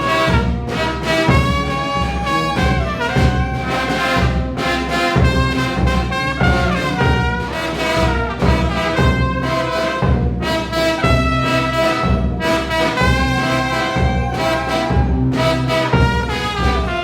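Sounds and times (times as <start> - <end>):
trumpets and trombones: 0.0 - 17.0
bass and drum pulse: 8.0 - 17.0.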